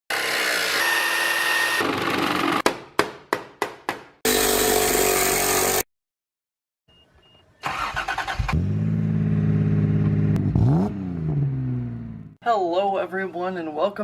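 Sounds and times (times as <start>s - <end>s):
power tools running: 0.1s - 2.6s, 4.2s - 5.9s.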